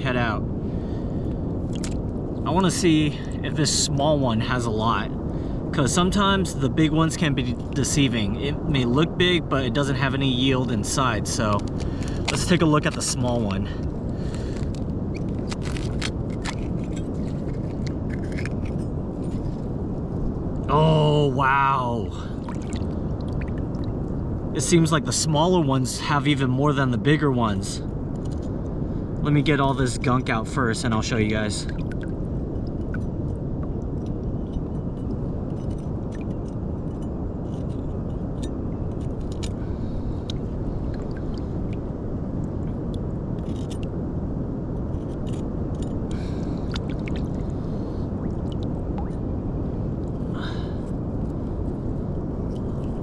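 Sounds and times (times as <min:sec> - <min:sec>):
steady low rumble: 0:00.0 - 0:53.0
wind: 0:00.0 - 0:53.0
shell cracking and crunching: 0:01.7 - 0:02.0, 0:11.6 - 0:12.6, 0:13.8 - 0:18.8
sea urchin shell clicks and scrapes: 0:01.7 - 0:03.0, 0:10.8 - 0:19.6, 0:34.1 - 0:41.8, 0:43.4 - 0:43.9, 0:44.8 - 0:47.7.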